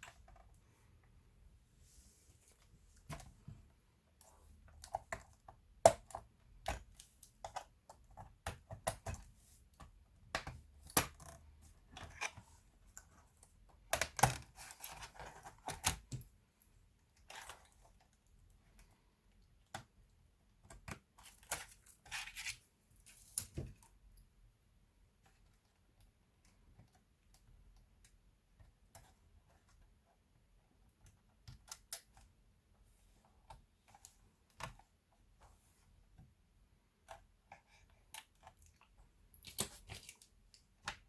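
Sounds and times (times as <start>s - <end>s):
plastic laptop parts clicking: 13.8s - 16.3s.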